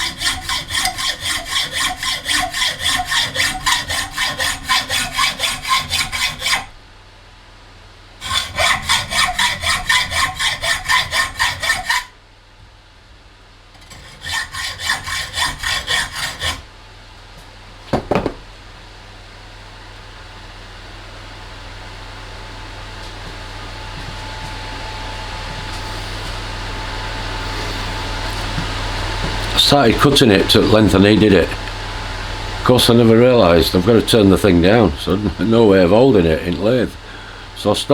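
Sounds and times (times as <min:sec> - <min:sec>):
hacksaw cutting metal: 0:00.0 - 0:06.7, 0:08.2 - 0:12.1, 0:13.8 - 0:16.6
steady hum: 0:00.0 - 0:37.9.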